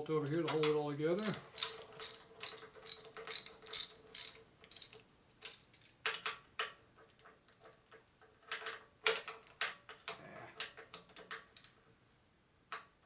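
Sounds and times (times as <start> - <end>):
ratchet wrench clicking: 1.2 - 5.6.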